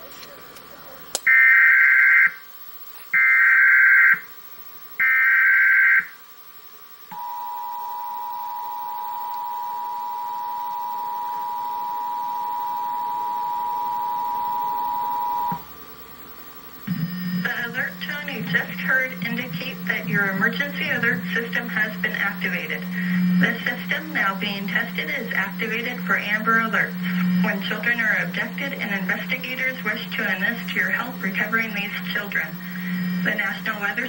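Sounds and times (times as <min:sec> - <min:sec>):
two-tone attention signal: 0:07.1 - 0:15.6
buzzy digital header bursts: 0:16.7 - 0:34.0.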